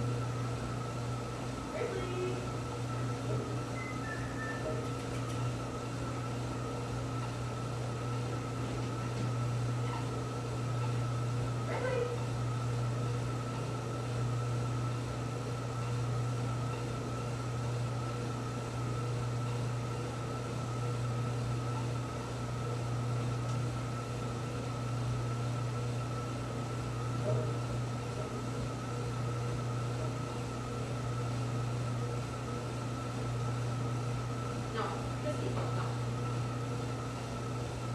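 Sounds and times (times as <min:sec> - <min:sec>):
steady mechanical hum: 0:00.0 - 0:37.9
faint high whine: 0:03.7 - 0:04.9.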